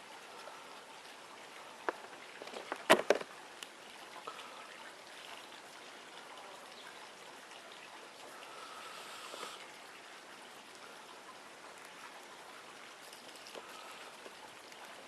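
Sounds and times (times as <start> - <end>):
faint trickling hiss: 0.0 - 15.0
sharp clicks and knocks: 1.8 - 3.3.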